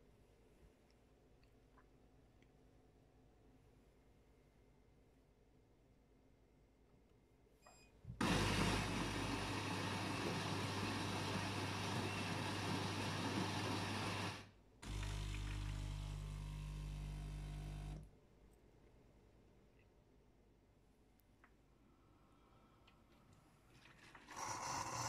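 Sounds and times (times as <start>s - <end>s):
coffee grinder running: 8.2s - 18.1s, 24.3s - 25.0s
coffee machine pump humming: 8.2s - 18.1s.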